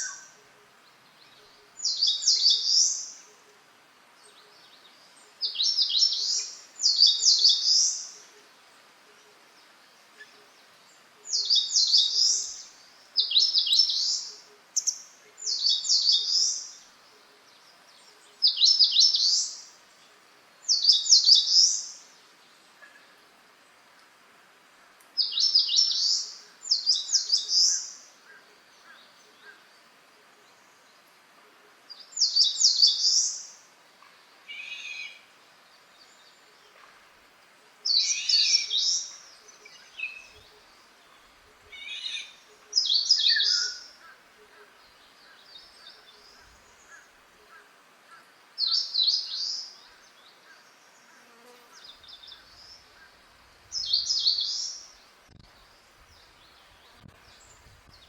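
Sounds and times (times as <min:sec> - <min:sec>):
songbird singing high phrases: 0:00.0 - 0:00.4, 0:01.1 - 0:03.4, 0:04.2 - 0:08.4, 0:11.2 - 0:19.8, 0:20.6 - 0:22.2, 0:25.2 - 0:29.7, 0:31.9 - 0:33.7, 0:34.4 - 0:35.3, 0:37.8 - 0:47.1, 0:48.6 - 0:51.1, 0:51.8 - 0:58.0.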